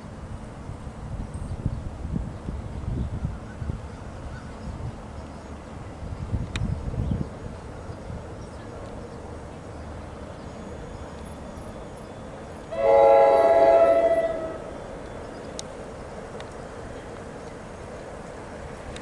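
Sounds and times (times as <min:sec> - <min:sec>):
train horn blast: 0:12.7 - 0:14.8.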